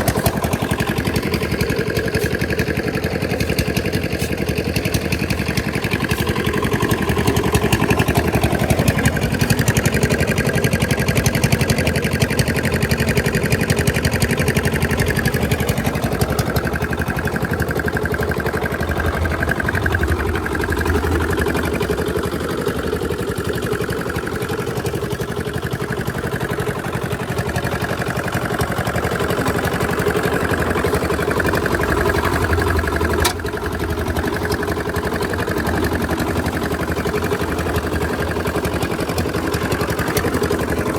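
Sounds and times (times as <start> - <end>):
engine chugging: 0.0 - 40.9.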